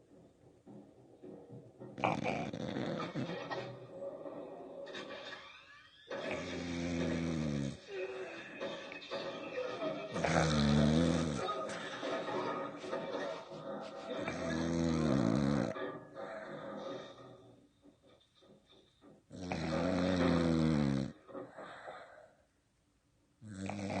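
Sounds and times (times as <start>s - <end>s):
dog snoring: 2.0s - 3.3s, 6.2s - 8.0s, 10.2s - 11.5s, 14.2s - 15.8s, 19.3s - 21.2s, 23.4s - 24.0s.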